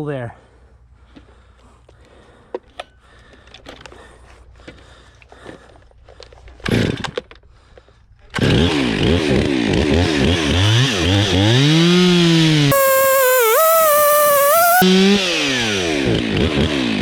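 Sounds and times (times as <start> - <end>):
short loud rasp: 12.7 - 14.8.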